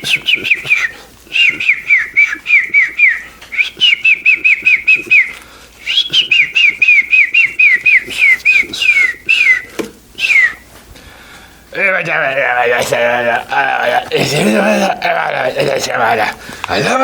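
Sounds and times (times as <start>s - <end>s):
birdlike whistling: 0.0s - 10.7s.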